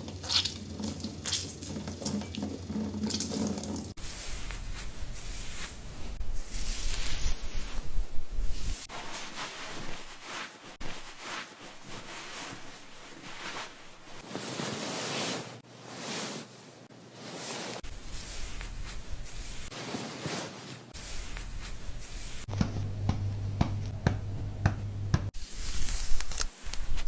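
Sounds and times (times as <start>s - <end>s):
hands rubbing wet hair: 4.0s - 16.5s, 17.2s - 24.3s.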